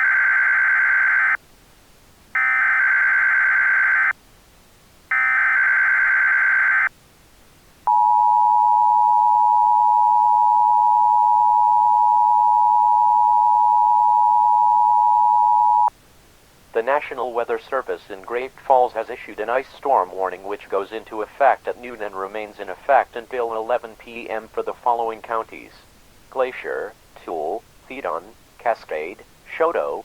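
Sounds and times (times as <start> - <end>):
two-tone attention signal: 7.9 - 15.9.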